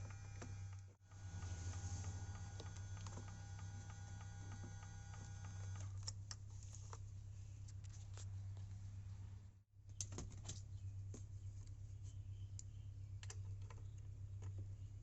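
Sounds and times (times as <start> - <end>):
low hum: 0.0 - 5.8
mirror motor whining: 0.0 - 6.0.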